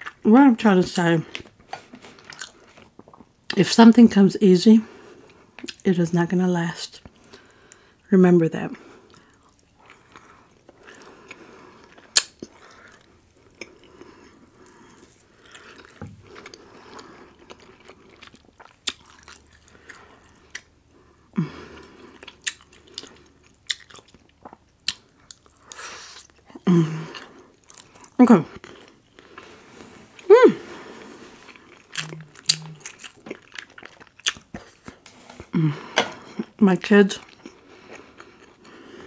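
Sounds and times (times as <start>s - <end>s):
person chewing and biting: 1.4s - 3.3s, 9.1s - 20.7s, 21.8s - 29.5s, 30.9s - 36.5s.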